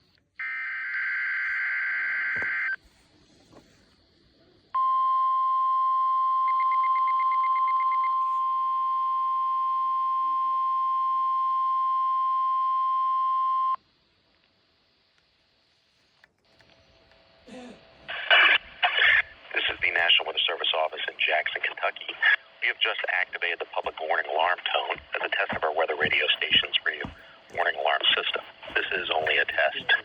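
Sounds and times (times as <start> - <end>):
radio hiss: 16.9 - 30.0
rapid beeping: 18.1 - 30.0
steady warning alarm tone: 18.1 - 30.0.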